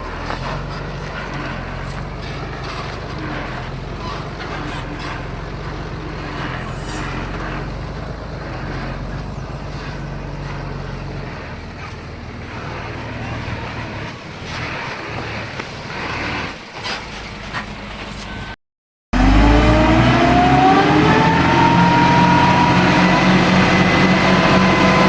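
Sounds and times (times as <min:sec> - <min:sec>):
tracks and blade clanking: 0:00.0 - 0:18.4
bulldozer diesel engine: 0:00.0 - 0:18.6, 0:19.2 - 0:25.0.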